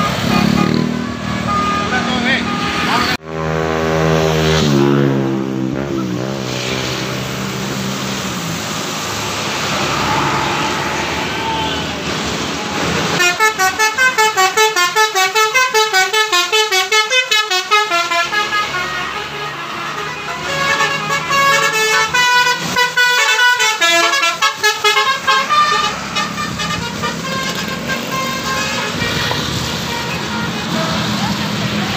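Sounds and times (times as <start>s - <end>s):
bus musical horn: 0.0s - 4.2s, 13.0s - 31.2s
heavy vehicle engine: 0.0s - 31.9s
traffic passing: 0.0s - 31.9s.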